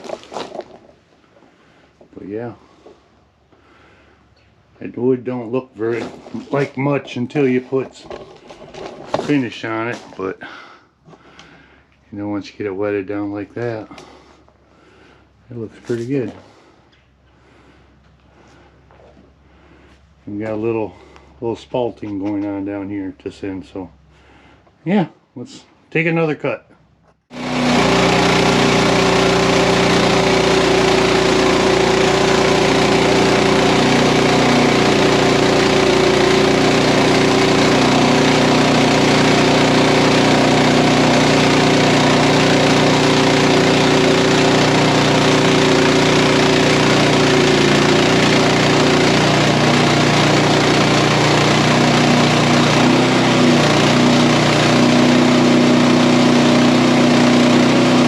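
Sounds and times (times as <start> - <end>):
band sawmill sawing log: 5.7 - 10.4, 27.3 - 58.0.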